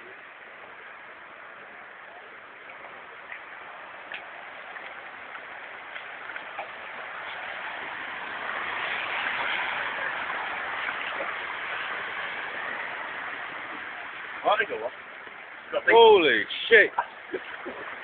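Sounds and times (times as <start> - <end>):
rushing splashing floodwater: 0.0 - 18.0.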